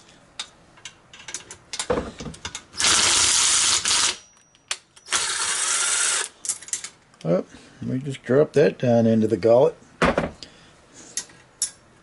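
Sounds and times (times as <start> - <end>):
power wrench running: 2.8 - 4.2, 5.1 - 6.3.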